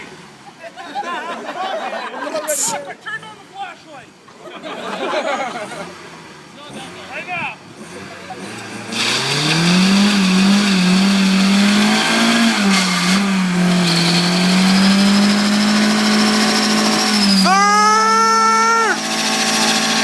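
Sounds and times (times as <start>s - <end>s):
car engine at high revs: 0.0s - 0.6s, 5.1s - 20.0s
high tire squeal: 12.5s - 20.0s.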